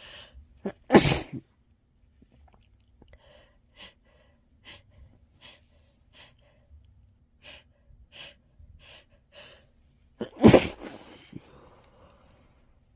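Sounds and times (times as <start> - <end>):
loud sneeze into a tissue: 0.6 - 1.4, 10.2 - 11.4
person gasping: 10.2 - 12.3.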